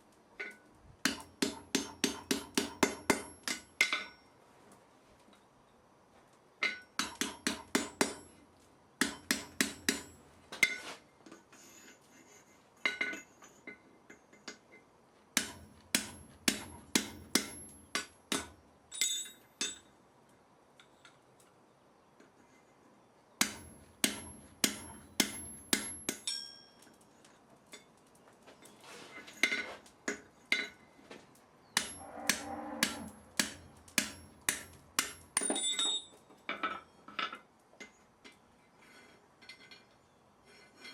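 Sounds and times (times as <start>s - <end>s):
hammer striking iron on anvil: 1.0s - 4.2s, 6.7s - 8.3s, 9.0s - 10.8s, 15.4s - 19.9s, 23.4s - 26.8s, 31.8s - 36.1s.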